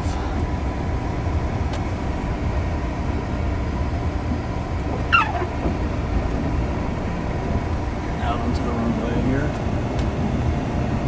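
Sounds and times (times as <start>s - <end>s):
car engine and road rumble: 0.0s - 11.0s
short falling squeak: 5.1s - 5.6s.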